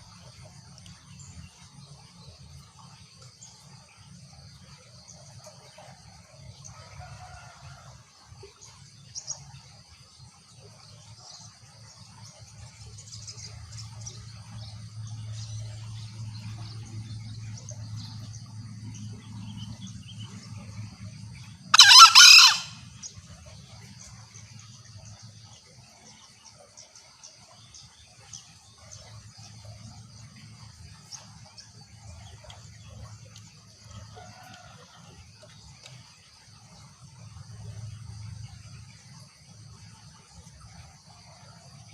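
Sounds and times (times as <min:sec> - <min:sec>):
junglefowl crowing: 0:21.7 - 0:22.8.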